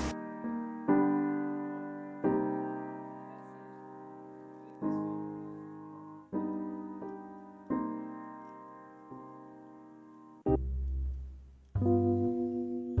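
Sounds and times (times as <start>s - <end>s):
slow piano chords: 0.0s - 13.0s.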